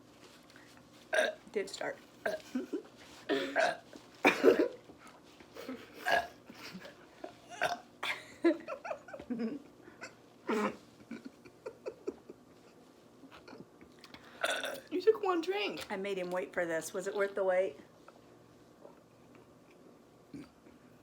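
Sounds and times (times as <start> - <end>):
person burping: 1.2 - 1.4, 2.2 - 2.6, 3.3 - 4.7, 6.0 - 6.4, 7.5 - 7.9, 14.4 - 14.9.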